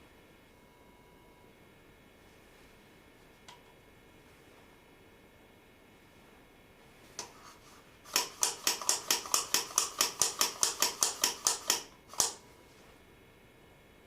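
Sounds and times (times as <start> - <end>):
sharp mechanical clicks: 8.1 - 12.4.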